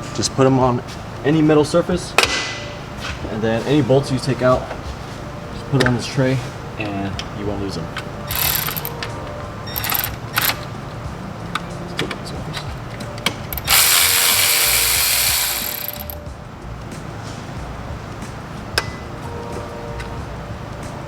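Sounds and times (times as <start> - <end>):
ratchet wrench clicking: 8.3 - 10.7, 13.5 - 16.2.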